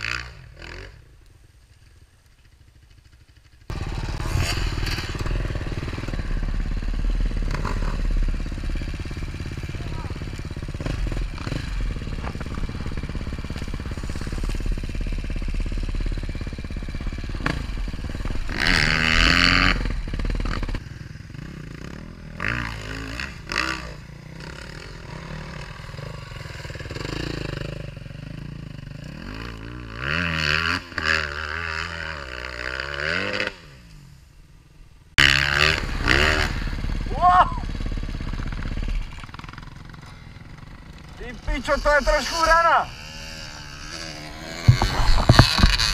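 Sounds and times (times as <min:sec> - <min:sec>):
motorcycle engine revving: 0:00.0 - 0:01.2, 0:01.8 - 0:34.2, 0:35.1 - 0:45.9
clattering and scraping: 0:44.5 - 0:45.9.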